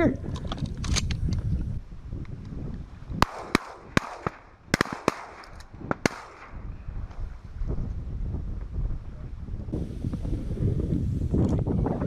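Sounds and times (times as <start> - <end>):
shotguns firing: 3.2 - 6.7.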